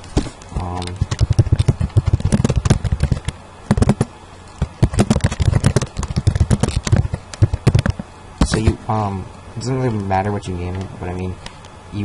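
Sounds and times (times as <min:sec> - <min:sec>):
computer keyboard typing: 0:00.8 - 0:04.1, 0:04.8 - 0:08.0.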